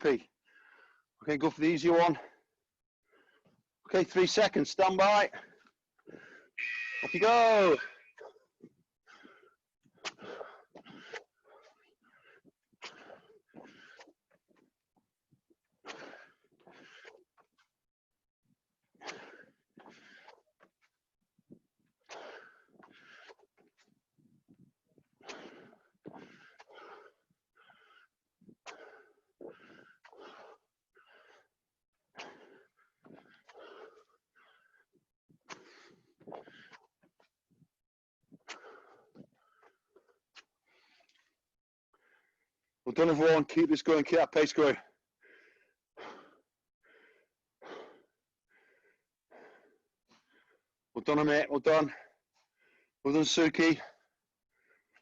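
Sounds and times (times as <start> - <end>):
person panting heavily: 0.4 - 1.2, 5.3 - 6.6, 7.2 - 14.8, 15.6 - 17.8, 18.8 - 37.3, 38.4 - 41.4, 44.8 - 50.8.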